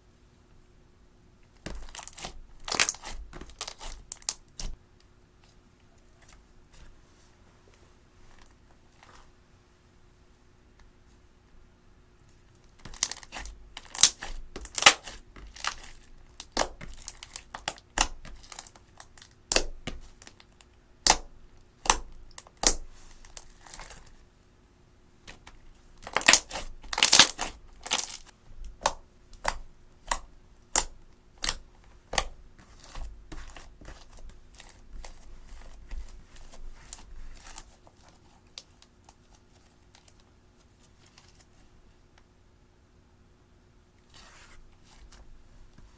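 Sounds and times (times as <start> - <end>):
slime crackling and popping: 1.7 - 4.7, 12.9 - 24.0, 25.3 - 37.7.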